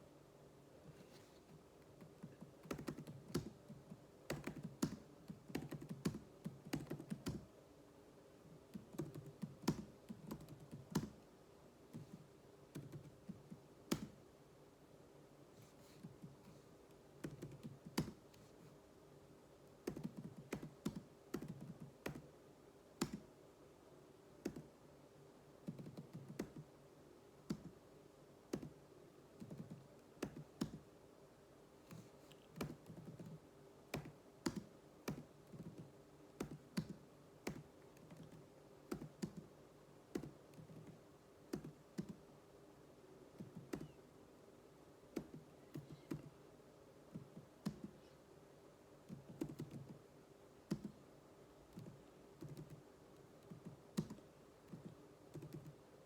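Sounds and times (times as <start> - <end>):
faint steady hum: 0.0 - 56.0
keyboard typing: 1.8 - 7.5, 8.7 - 11.2, 11.9 - 14.2, 17.2 - 18.4, 19.8 - 22.3, 23.0 - 23.3, 24.4 - 24.7, 25.6 - 26.7, 28.5 - 28.8, 29.4 - 30.8, 31.9 - 39.5, 40.1 - 42.2, 43.4 - 44.0, 45.1 - 46.3, 47.1 - 48.0, 49.0 - 50.0, 50.7 - 51.0, 51.7 - 55.8.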